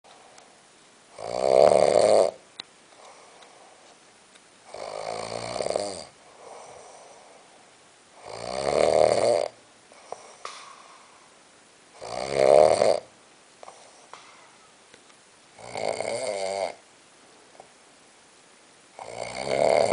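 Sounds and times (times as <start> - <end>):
loud snoring: 1.1 - 2.4, 4.7 - 6.8, 8.2 - 9.6, 12.0 - 13.1, 15.6 - 16.8, 19.0 - 19.9
faint breathing: 2.9 - 4.0, 6.2 - 8.3, 9.9 - 11.4, 13.6 - 14.8.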